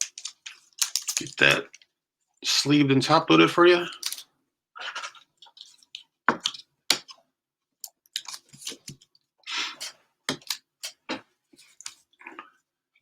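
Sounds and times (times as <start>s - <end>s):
plastic sleeve rustles and clicks: 0.0s - 2.0s, 3.9s - 4.3s, 7.8s - 9.2s.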